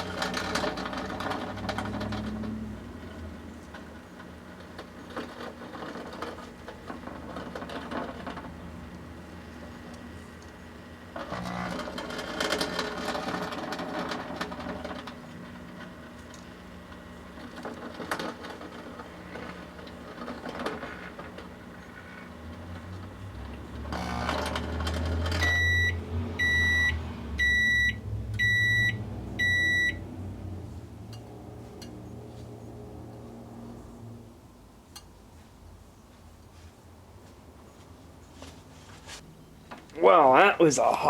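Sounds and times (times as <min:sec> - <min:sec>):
microwave oven running: 0:00.0 - 0:31.9
microwave oven beeps: 0:11.2 - 0:11.8, 0:23.9 - 0:24.4, 0:25.3 - 0:30.1.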